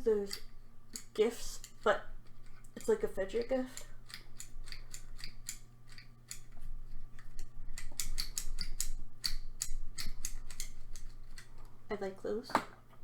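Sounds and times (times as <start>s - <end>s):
fidget toy clicking: 2.7s - 6.5s, 7.3s - 11.5s.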